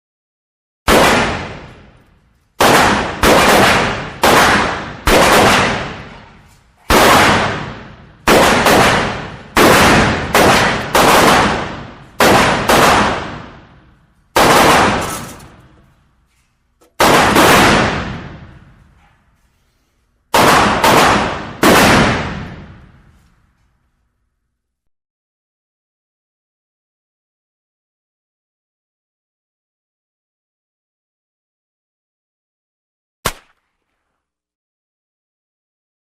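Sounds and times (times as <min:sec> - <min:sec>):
echoing gunshots: 0:00.9 - 0:15.9, 0:17.0 - 0:18.9, 0:20.3 - 0:23.1, 0:33.2 - 0:34.1.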